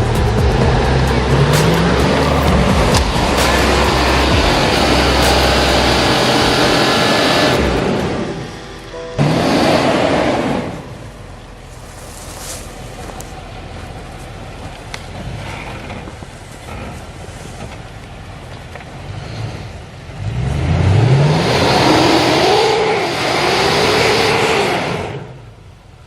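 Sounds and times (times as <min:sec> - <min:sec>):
loud rushing noise: 0:00.0 - 0:14.2
engine revving: 0:00.0 - 0:25.6.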